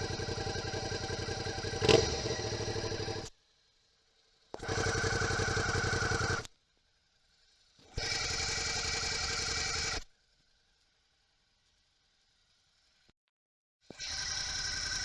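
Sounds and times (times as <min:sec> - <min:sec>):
motorcycle engine running: 0:00.0 - 0:03.3.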